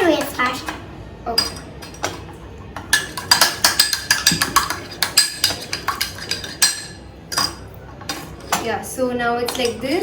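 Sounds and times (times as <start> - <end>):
spoon clinking against a mug: 2.8 - 8.3.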